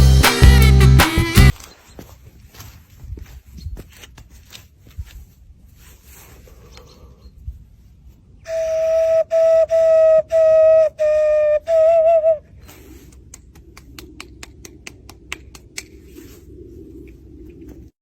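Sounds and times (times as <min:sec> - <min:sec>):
flute-like whistle notes: 0:08.4 - 0:12.5.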